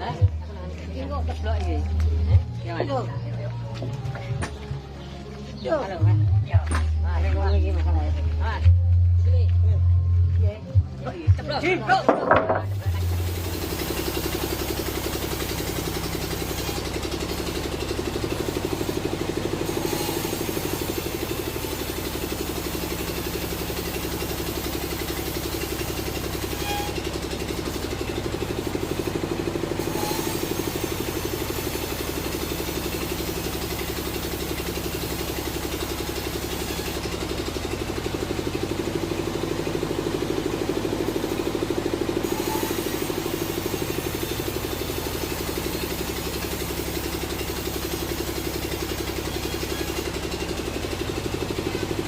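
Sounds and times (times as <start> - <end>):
sawmill engine droning: 12.0 - 52.0.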